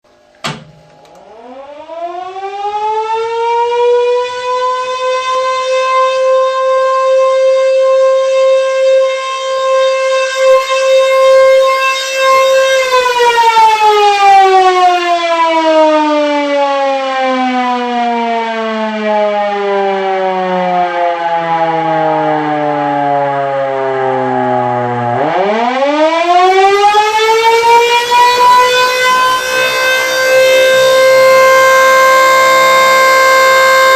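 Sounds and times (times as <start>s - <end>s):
click: 0.4s - 1.3s
siren winding up and down: 0.9s - 17.9s, 19.1s - 33.9s.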